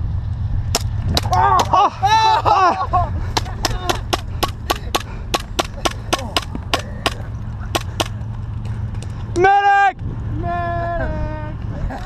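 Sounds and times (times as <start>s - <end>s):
low rumble: 0.0s - 12.0s
airsoft guns firing sharp cracks: 3.4s - 8.2s.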